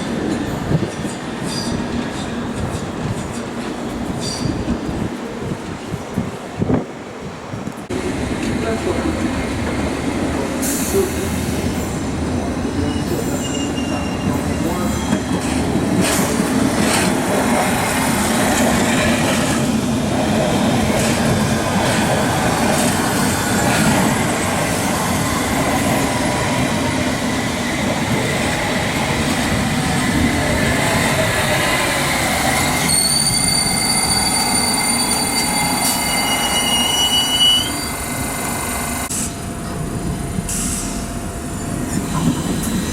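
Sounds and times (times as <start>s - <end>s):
train wheels rumbling on rails: 0.0s - 42.9s
high wheel squeal: 12.8s - 15.3s, 32.6s - 38.2s.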